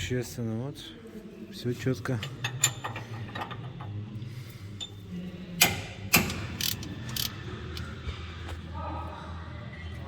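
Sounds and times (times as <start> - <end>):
ratchet wrench clicking: 5.6 - 7.4.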